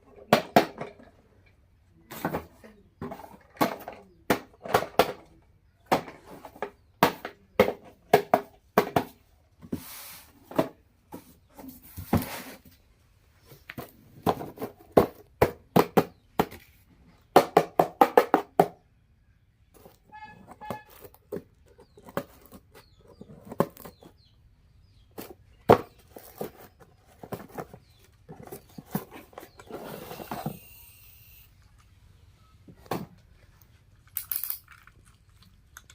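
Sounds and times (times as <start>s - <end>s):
plastic toys clicking and knocking: 0.0s - 9.2s, 34.0s - 35.9s.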